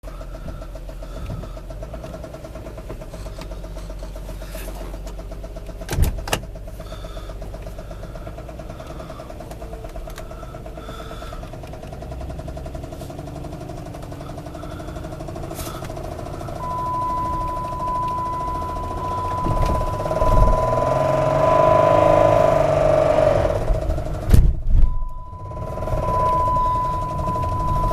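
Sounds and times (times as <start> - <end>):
car engine knocking: 0.0 - 27.9
high whine: 16.3 - 27.9.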